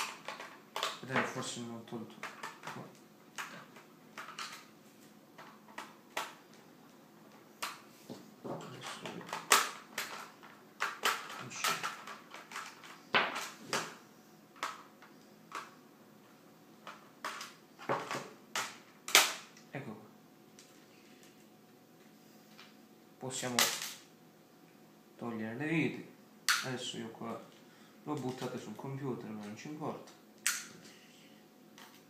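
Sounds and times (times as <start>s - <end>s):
plastic parts tapping: 0.0s - 1.3s, 2.1s - 4.7s, 7.3s - 14.0s.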